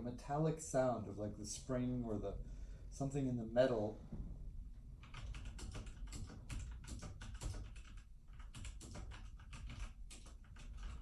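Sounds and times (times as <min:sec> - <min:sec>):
mechanical keyboard typing: 0:05.0 - 0:11.0.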